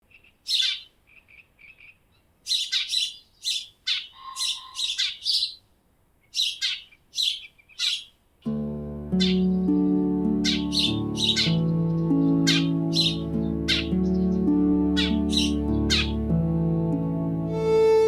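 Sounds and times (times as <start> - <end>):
birds chirping and trilling: 0.0 - 8.2, 9.0 - 18.0.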